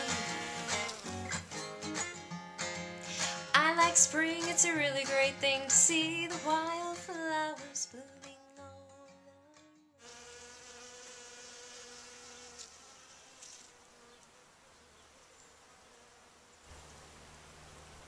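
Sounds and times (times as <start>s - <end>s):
insect buzzing: 0.0s - 1.7s, 9.8s - 18.0s.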